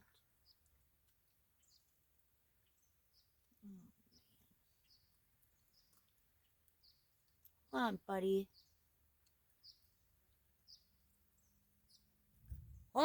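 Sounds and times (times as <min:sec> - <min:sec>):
faint high bird chirps: 0:01.6 - 0:08.9
low voice murmur: 0:03.6 - 0:04.0.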